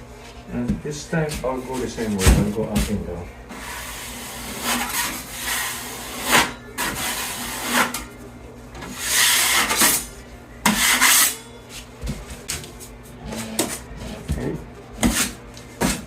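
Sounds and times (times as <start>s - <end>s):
drywall knife scraping a wall: 3.8s - 8.0s, 10.6s - 11.4s.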